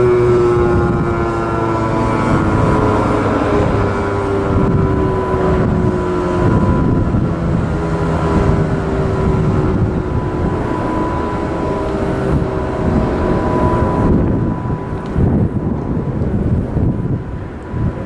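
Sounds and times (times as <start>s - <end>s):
faint rotating siren winding down: 0.0s - 18.0s
wind buffeting microphone: 0.0s - 18.0s.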